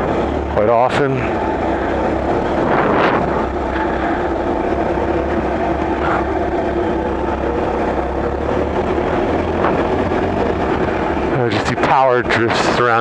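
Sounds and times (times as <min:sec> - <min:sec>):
motorcycle engine running: 0:00.0 - 0:13.0
wind rushing: 0:02.4 - 0:03.7.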